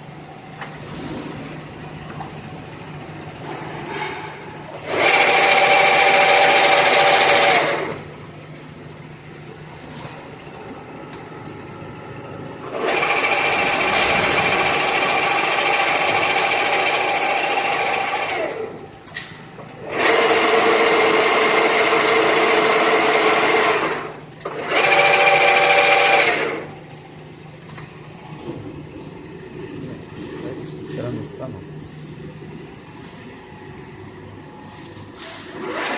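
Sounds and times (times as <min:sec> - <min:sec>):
lathe gears whining: 0:03.7 - 0:08.1, 0:12.6 - 0:18.8, 0:19.8 - 0:26.8, 0:28.1 - 0:35.9.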